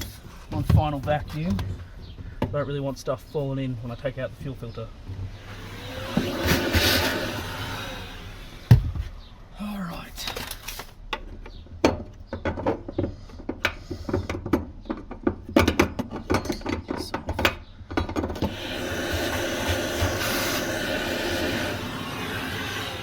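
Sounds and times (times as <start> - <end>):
vacuum cleaner running: 5.4 - 8.9, 18.4 - 23.0
tools clicking and knocking: 10.3 - 18.5.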